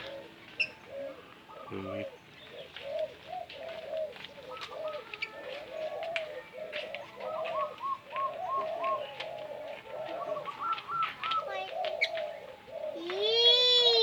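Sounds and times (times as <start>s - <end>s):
doves cooing: 0.0s - 14.0s
small birds chirping: 0.0s - 14.0s.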